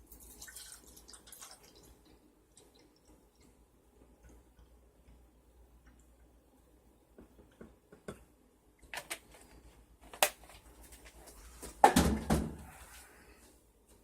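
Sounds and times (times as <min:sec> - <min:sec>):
thump and rattle: 0:11.8 - 0:12.6.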